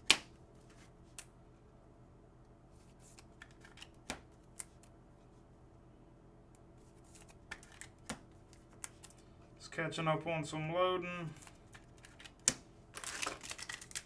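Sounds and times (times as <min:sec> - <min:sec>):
cards and wrappers clicking: 0:07.1 - 0:09.2, 0:11.4 - 0:14.0.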